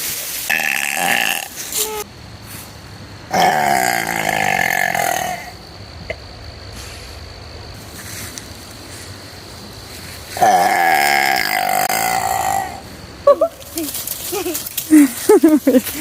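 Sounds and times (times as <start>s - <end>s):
girl burping: 3.3s - 5.5s.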